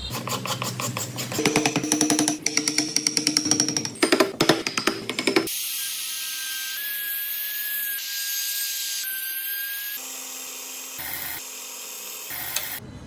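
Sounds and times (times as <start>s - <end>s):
power tool whining on wood: 5.6s - 12.8s.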